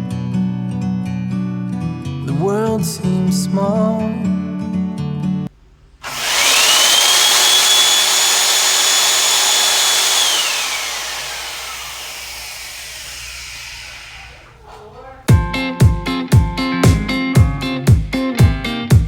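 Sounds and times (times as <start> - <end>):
vacuum cleaner motor whine: 6.0 - 14.6.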